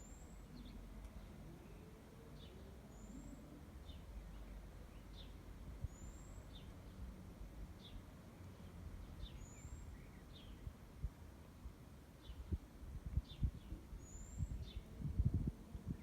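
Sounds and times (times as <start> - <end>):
small birds chirping: 0.0 - 7.1, 7.7 - 10.8.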